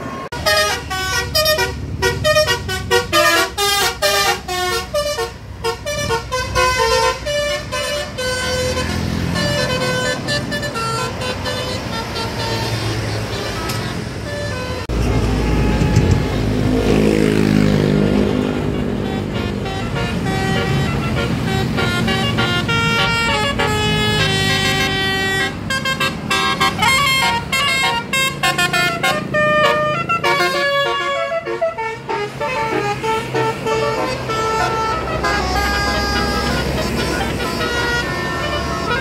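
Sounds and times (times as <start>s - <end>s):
bus engine rumble: 0.0s - 39.0s
multi-tone bus horn tune: 0.0s - 39.0s.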